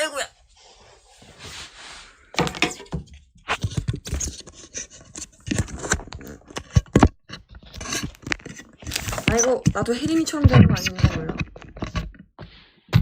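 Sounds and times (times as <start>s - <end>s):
knocks and scrapes: 0.5s - 13.0s.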